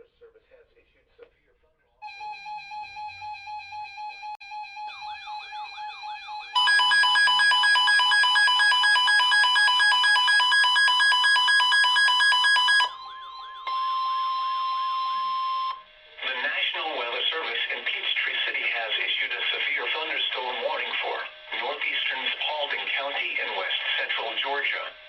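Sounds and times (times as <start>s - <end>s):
steady alarm tone: 2.0s - 17.5s
pulsed beeping tone: 4.5s - 16.1s
loud rapid beeping: 4.6s - 15.9s.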